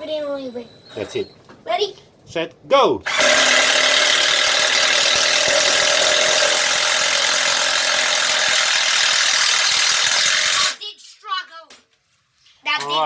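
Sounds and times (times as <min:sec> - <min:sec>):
impact driver hammering: 0:03.1 - 0:10.8.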